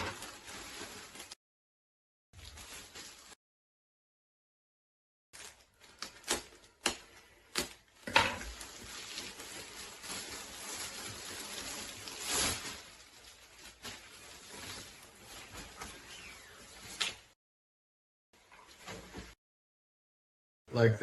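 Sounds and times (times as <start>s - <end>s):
clothing and packaging rustling: 0.0s - 1.4s, 2.4s - 3.4s, 5.4s - 17.4s, 18.4s - 19.4s.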